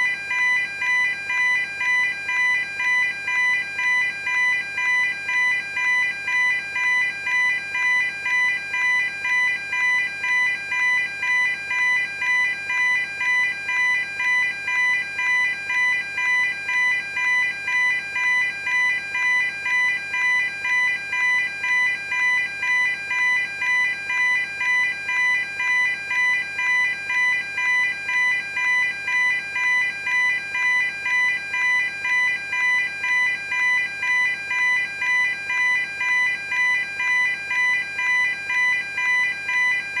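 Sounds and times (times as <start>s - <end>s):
level crossing alarm dinging: 0.0s - 40.0s.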